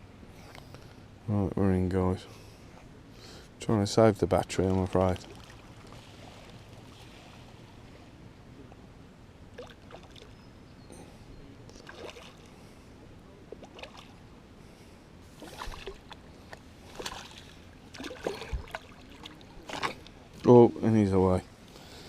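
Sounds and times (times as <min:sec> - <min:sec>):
small water splashes and sloshing: 0:04.2 - 0:08.8, 0:09.5 - 0:10.4, 0:11.7 - 0:12.9, 0:13.5 - 0:14.3, 0:15.2 - 0:20.6.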